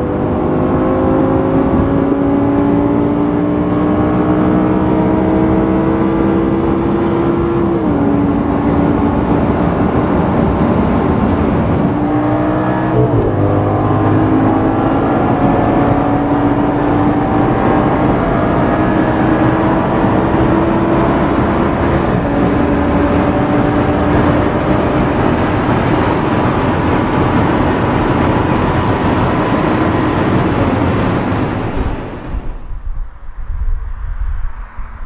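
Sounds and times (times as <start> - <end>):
road noise: 0.0 - 35.0
car engine running: 6.4 - 32.5.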